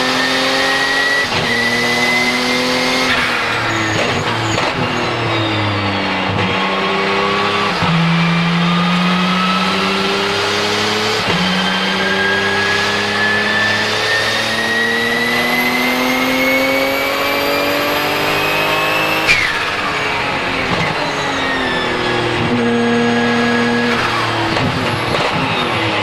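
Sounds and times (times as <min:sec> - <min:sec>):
race car engine accelerating: 0:00.0 - 0:26.0
turbo whistle: 0:19.2 - 0:22.5.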